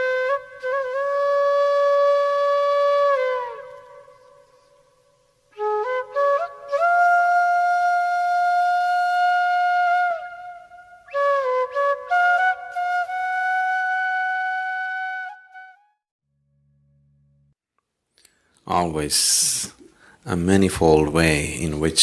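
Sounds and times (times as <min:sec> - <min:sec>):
solo flute melody: 0:00.0 - 0:16.0.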